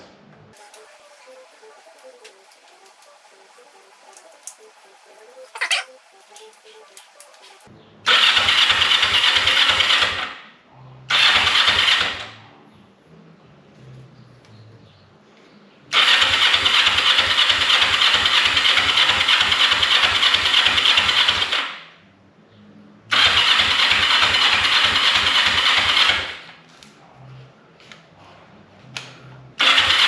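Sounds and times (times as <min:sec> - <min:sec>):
electric starter whine: 0:00.6 - 0:07.7
motorcycle engine cranking: 0:23.4 - 0:26.2.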